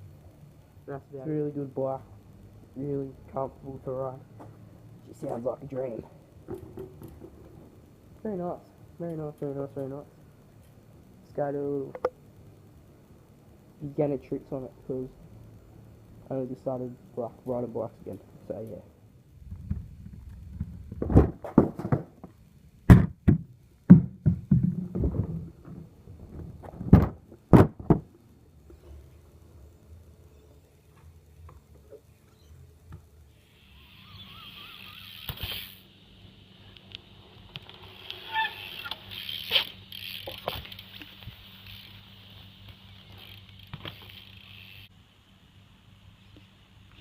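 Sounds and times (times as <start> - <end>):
bike rattling: 5.2 - 8.0, 19.4 - 28.2, 33.0 - 36.0, 37.1 - 44.9
bike thudding on ground: 6.4 - 7.8, 19.6 - 28.2, 34.5 - 35.8, 37.5 - 44.9
bike squeak: 33.4 - 35.8, 37.8 - 41.0, 42.9 - 44.9.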